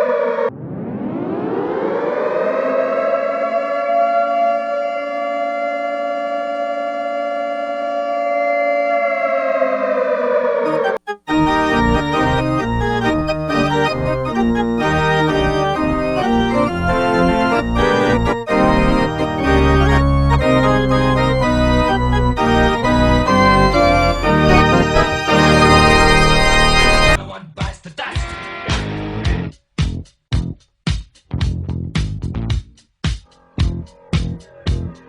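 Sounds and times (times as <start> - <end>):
organ tune with bass line: 10.7 - 27.2.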